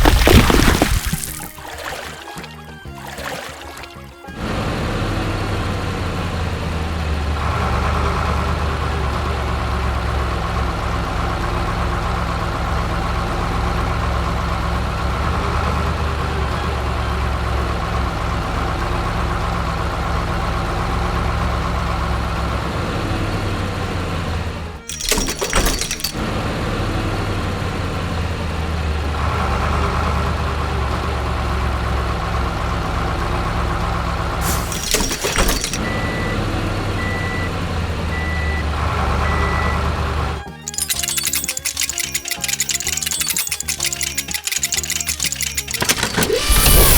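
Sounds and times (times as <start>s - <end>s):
sharp clattering impacts: 0.0s - 1.6s, 34.4s - 35.8s, 40.7s - 46.9s
background music: 1.4s - 6.8s.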